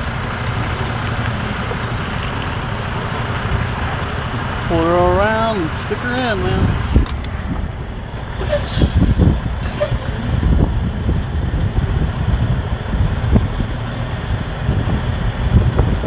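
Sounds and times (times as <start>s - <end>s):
truck diesel engine running: 0.0s - 16.0s
wind rumble on microphone: 6.3s - 16.0s
short hisses: 8.4s - 10.2s.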